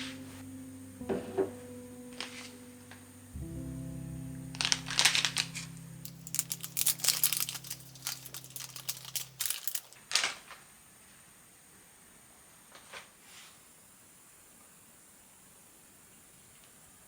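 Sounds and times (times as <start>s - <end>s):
low background music chord: 0.0s - 9.8s
sharp clicks and crinkly rustles: 4.5s - 10.7s.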